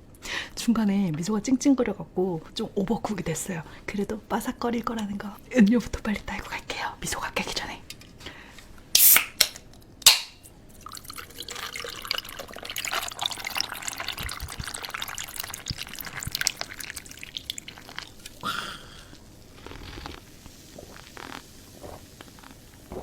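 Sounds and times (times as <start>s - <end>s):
drink can hiss: 9.0s - 9.4s, 17.8s - 23.0s
sharp crack: 9.0s - 10.4s
drink pouring and fizzing: 10.7s - 23.0s.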